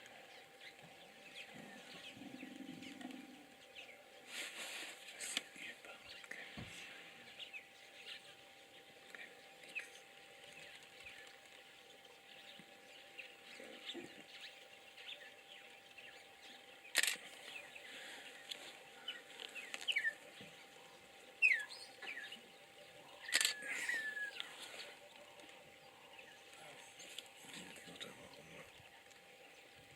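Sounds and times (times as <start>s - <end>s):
birds chirping: 0.0s - 29.9s
faint steady hum: 0.0s - 29.9s
sliding bird calls: 23.2s - 25.6s.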